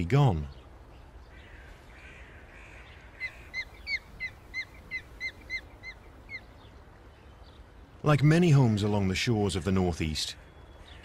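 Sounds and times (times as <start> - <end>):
osprey chirping: 3.2 - 7.4.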